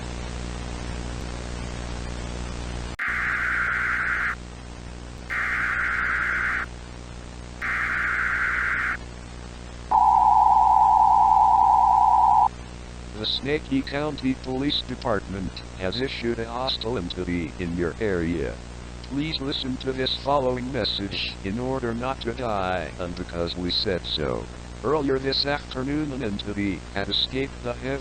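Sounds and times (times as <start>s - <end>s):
static hiss and hum: 0.0s - 28.0s
buzzy data bursts: 3.0s - 4.4s, 5.3s - 6.7s, 7.6s - 9.0s
steady attention tone: 3.0s - 4.4s, 5.3s - 6.7s, 7.6s - 9.0s, 9.9s - 12.5s.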